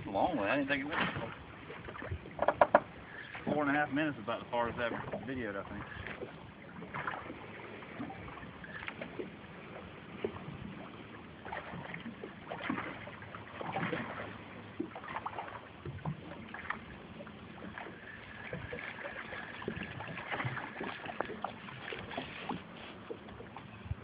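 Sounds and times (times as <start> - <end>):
waves lapping against hull: 0.0 - 24.0
light knocks and clicks: 2.4 - 2.9.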